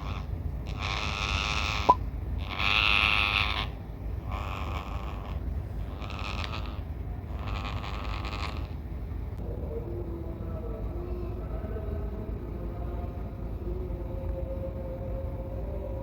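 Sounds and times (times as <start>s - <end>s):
parrot raspy hissing: 0.0s - 3.7s, 4.3s - 8.8s.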